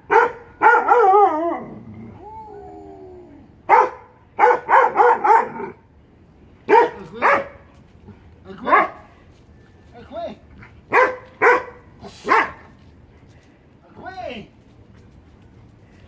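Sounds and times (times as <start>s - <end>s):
dog barking: 0.1s - 1.4s, 3.7s - 5.8s, 6.7s - 7.6s, 8.7s - 9.1s, 10.9s - 12.7s.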